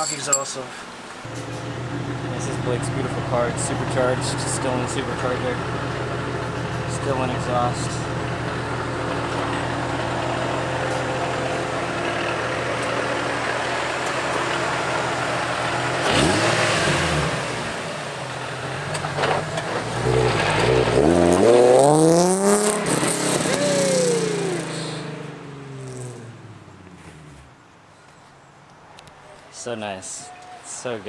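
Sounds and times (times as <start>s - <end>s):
car engine idling and revving: 1.2s - 27.7s.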